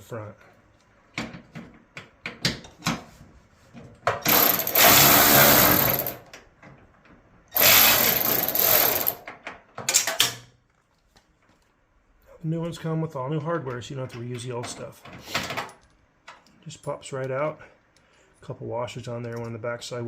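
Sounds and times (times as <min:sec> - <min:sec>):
power driver spinning: 0:04.3 - 0:06.2.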